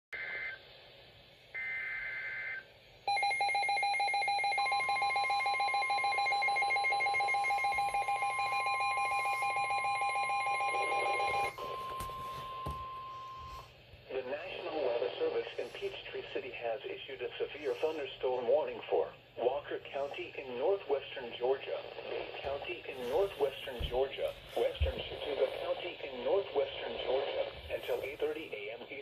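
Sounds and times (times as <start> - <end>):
rapidly pulsing alarm: 1.6 - 13.7
steady warning alarm tone: 1.6 - 13.7.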